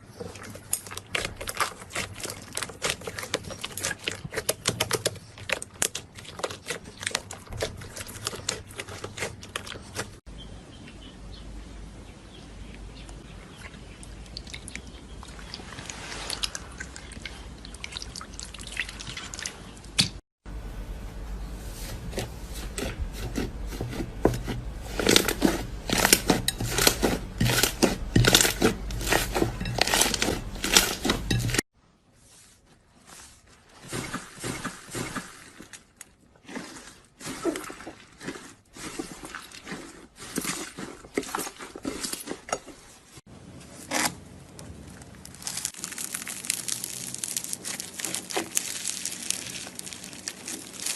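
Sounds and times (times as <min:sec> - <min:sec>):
slime crackling and squelching: 0:00.0 - 0:10.3, 0:21.8 - 0:31.7, 0:44.7 - 0:50.9.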